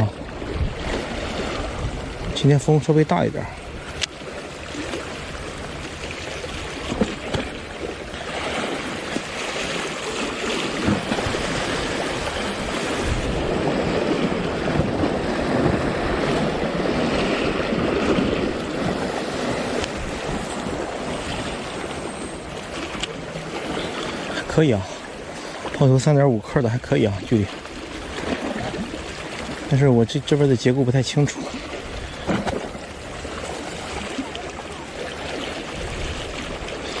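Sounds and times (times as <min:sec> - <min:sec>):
strong wind: 0:00.0 - 0:04.1, 0:04.7 - 0:25.7
sea waves breaking on shore: 0:00.0 - 0:37.0.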